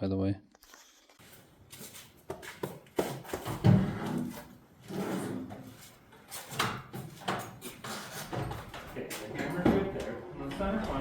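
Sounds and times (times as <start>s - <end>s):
tools knocking and clattering: 6.2s - 9.9s.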